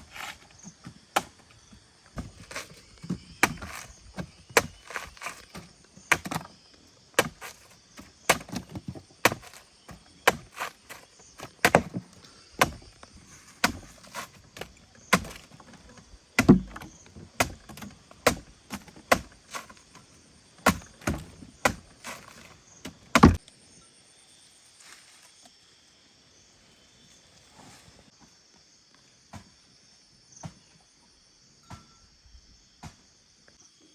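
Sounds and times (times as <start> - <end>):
insects trilling: 0.0 - 33.9
sharp strikes on wood: 2.2 - 6.5, 7.2 - 13.0, 13.6 - 15.5, 16.4 - 19.8, 20.6 - 23.4.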